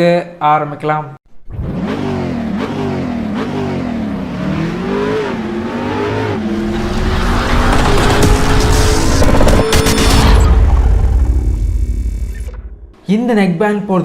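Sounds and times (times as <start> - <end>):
car engine revving: 1.4 - 13.0
rising rush of noise: 5.5 - 12.9.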